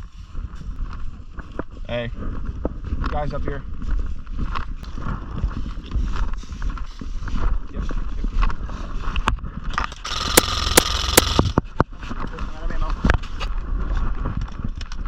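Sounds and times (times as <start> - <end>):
airsoft gun firing burst: 10.0 - 11.6.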